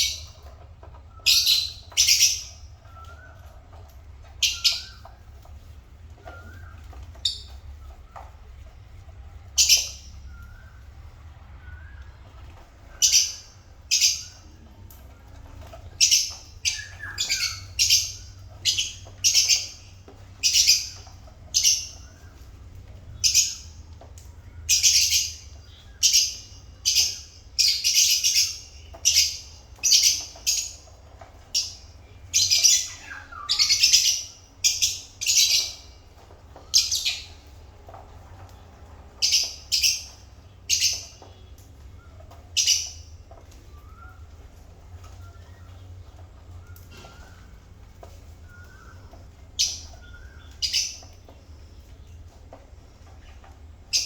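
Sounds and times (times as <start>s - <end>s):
lovebirds chirping shrilly: 1.1s - 3.7s, 15.6s - 22.5s, 24.7s - 37.6s.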